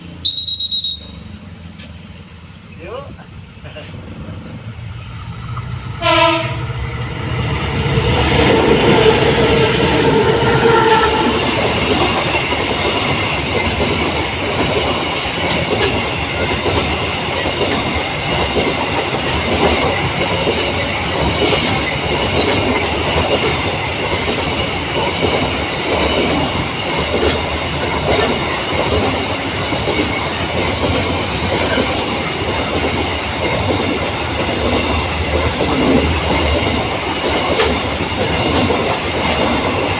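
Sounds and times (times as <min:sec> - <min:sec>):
train wheels rumbling on rails: 0:00.0 - 0:39.9
held tone: 0:00.2 - 0:01.4.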